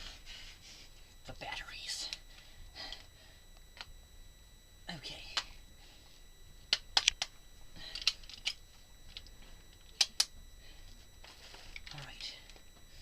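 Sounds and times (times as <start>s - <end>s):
sharp plastic clicks: 6.7s - 7.3s, 9.9s - 10.3s.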